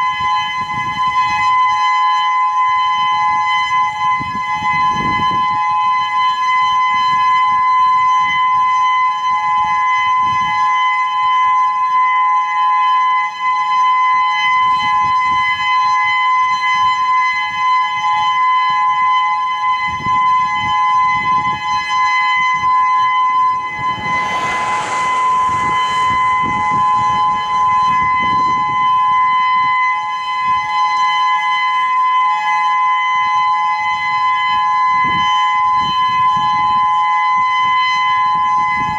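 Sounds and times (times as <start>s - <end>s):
outdoor warning siren steady tone: 0.0s - 38.9s
brief rush of noise: 23.5s - 27.9s.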